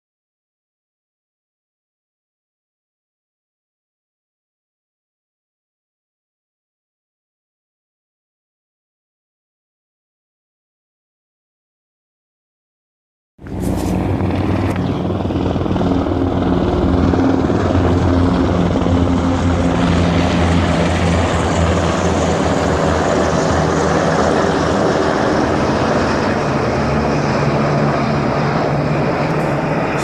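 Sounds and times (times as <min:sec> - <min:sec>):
helicopters flying over: 0:13.4 - 0:30.0.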